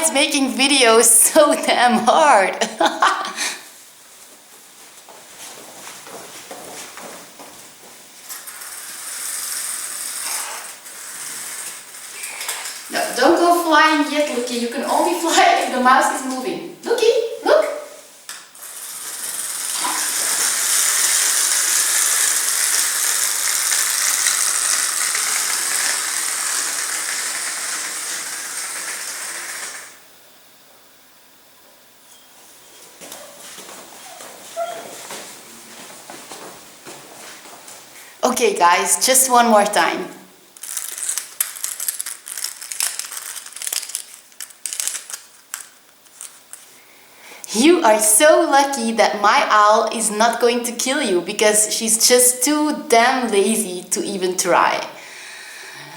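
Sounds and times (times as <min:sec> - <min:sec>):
clockwork toy whirring: 0:08.3 - 0:14.4, 0:18.6 - 0:30.0, 0:40.6 - 0:46.4.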